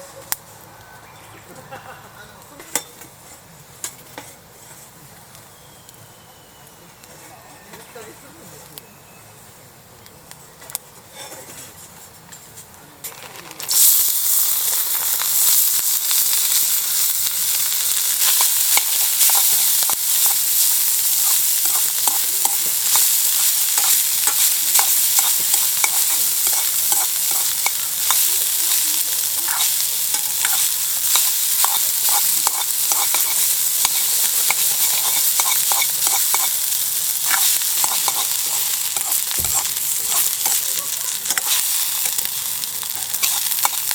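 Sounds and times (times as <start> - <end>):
food sizzling in wok: 1.8 - 43.9
spatula scraping wok: 10.6 - 43.9.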